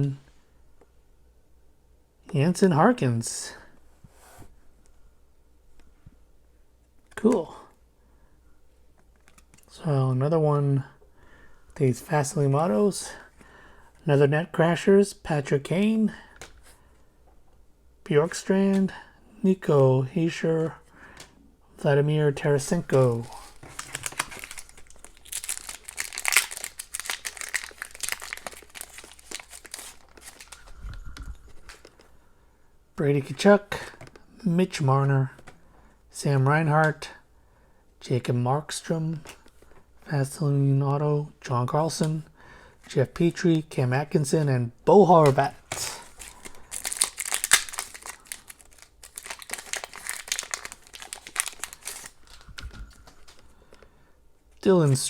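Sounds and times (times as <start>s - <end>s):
foil wrapper crinkling and tearing: 22.7s - 30.8s, 45.3s - 53.4s.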